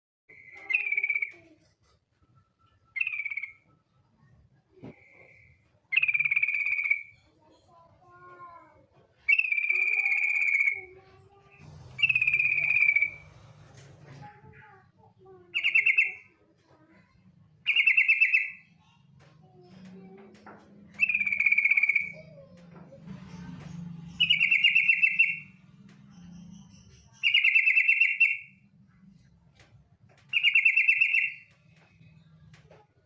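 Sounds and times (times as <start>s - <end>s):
bird trilled calls: 2.9s - 3.7s, 5.9s - 7.2s, 20.9s - 22.5s, 24.2s - 28.5s, 30.3s - 31.5s.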